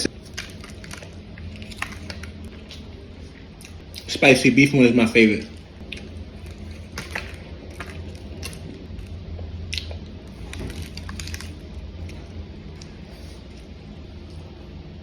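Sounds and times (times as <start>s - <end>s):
steady low hum: 0.0s - 15.0s
person chewing with mouth clicks: 9.7s - 13.7s.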